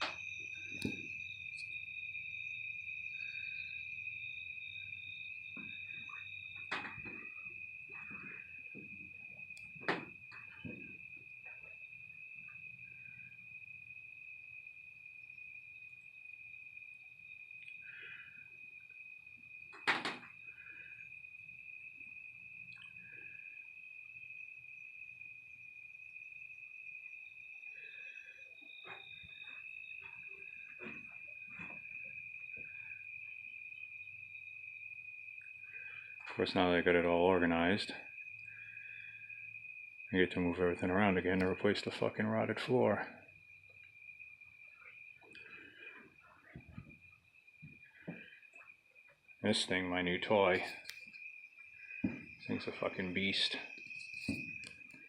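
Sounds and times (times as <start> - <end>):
crickets trilling: 0.0 - 55.0
faint high-pitched tone: 51.8 - 55.0.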